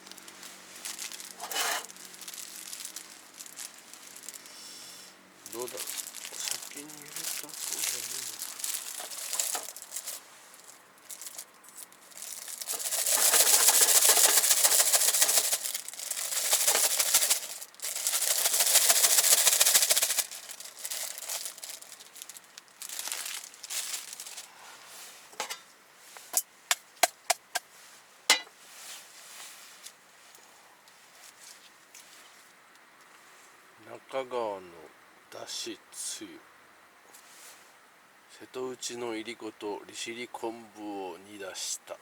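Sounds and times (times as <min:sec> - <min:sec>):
plastic packaging crinkling and tearing: 0:00.0 - 0:04.5, 0:05.5 - 0:24.5
sharp clicks and taps: 0:26.7 - 0:27.6.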